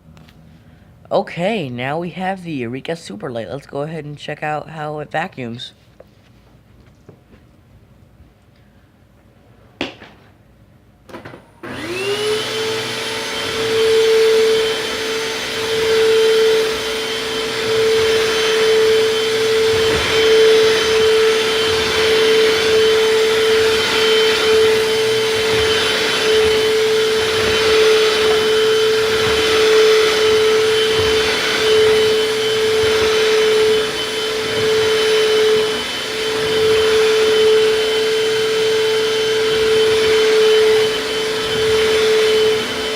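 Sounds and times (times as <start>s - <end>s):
vacuum cleaner motor whine: 11.1s - 42.9s
vacuum cleaner pushed over rug: 11.6s - 42.9s.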